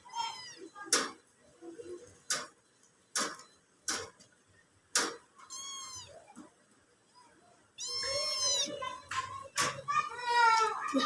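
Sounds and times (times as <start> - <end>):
cat meowing: 0.1 - 0.7, 5.4 - 6.2, 7.8 - 8.8
sharp clicks: 4.9 - 5.2.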